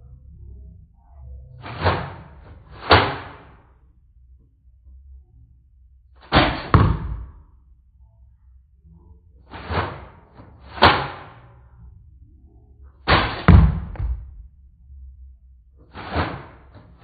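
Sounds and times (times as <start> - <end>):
foam-dart blaster shots: 1.6 - 3.5, 6.3 - 7.3, 9.5 - 11.4, 13.1 - 14.2, 16.0 - 16.6.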